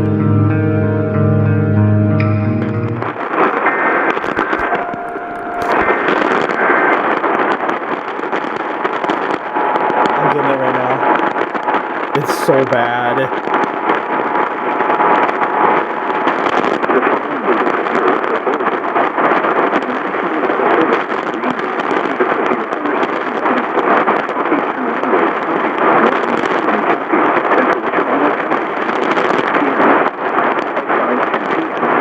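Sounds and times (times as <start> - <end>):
radio static hiss: 3.0 - 6.7, 10.2 - 11.1, 12.2 - 13.3.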